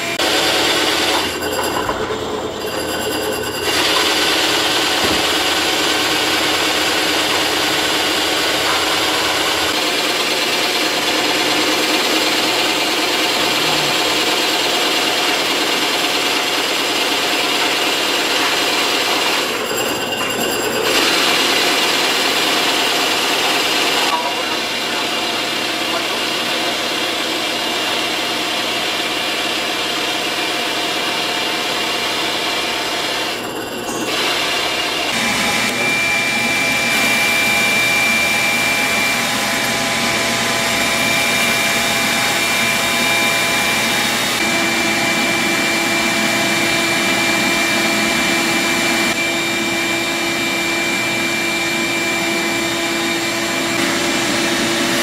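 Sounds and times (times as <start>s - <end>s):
grinding noise: 0.0s - 29.5s, 31.3s - 49.3s
power tool whining: 0.0s - 55.0s.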